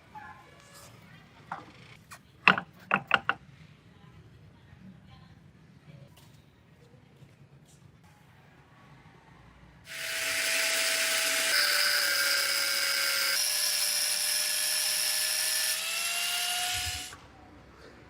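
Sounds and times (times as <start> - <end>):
power tool whining: 9.9 - 17.2.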